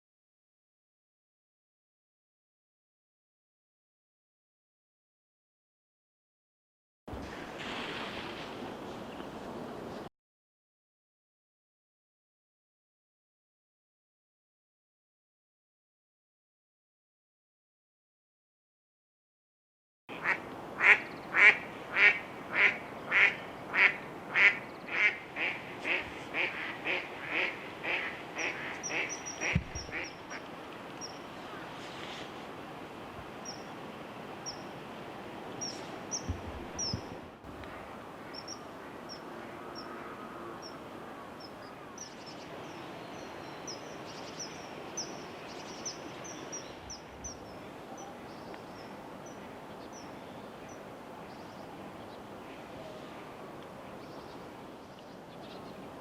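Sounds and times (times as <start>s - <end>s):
river noise: 7.1s - 10.1s, 20.1s - 56.0s
duck quacking: 20.2s - 30.1s.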